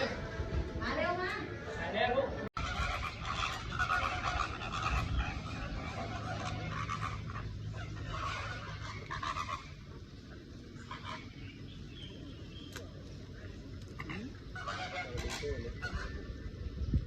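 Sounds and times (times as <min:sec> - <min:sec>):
birds honking: 0:02.6 - 0:12.6, 0:13.9 - 0:16.6.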